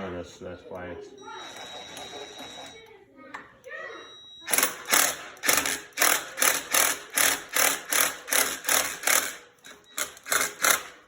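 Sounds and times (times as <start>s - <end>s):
impact wrench hammering: 4.5s - 11.0s.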